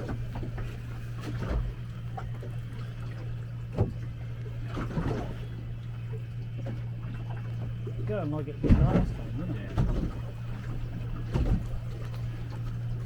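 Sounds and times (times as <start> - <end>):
steady low hum: 0.0 - 13.0
water slapping against boat hull: 0.0 - 13.0.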